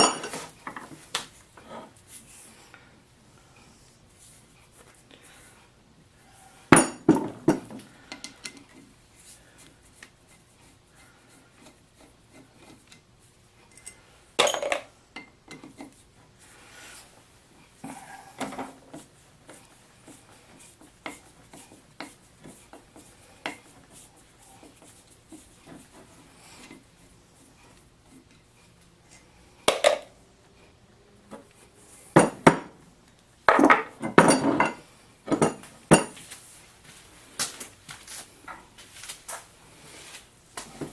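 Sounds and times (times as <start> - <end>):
metal parts clinking: 13.7 - 14.9.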